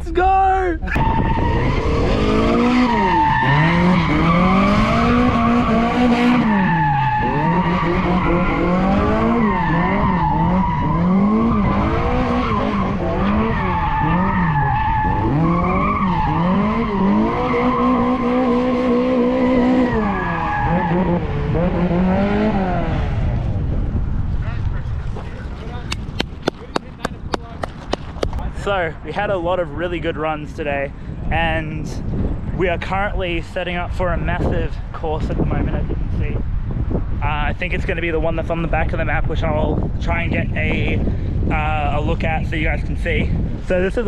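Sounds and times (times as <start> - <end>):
car engine revving: 0.8 - 24.4
tyres skidding: 0.8 - 29.3.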